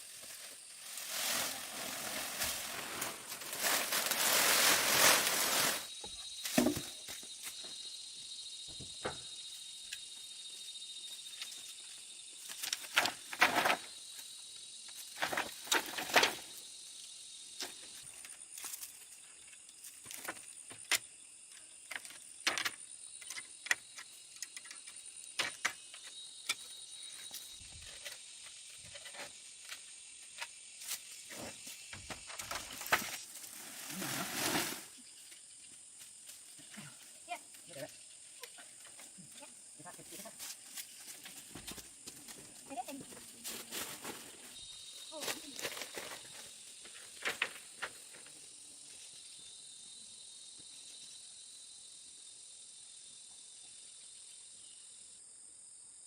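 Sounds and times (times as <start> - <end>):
crickets chirping: 0.0 - 56.0
loud hiss: 0.9 - 5.9.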